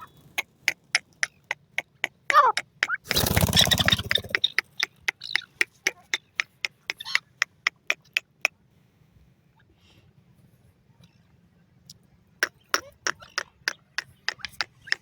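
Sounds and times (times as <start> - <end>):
partridge harsh rasping call: 0.4 - 8.4
sharp evenly spaced clicks: 0.4 - 8.6, 12.4 - 15.0.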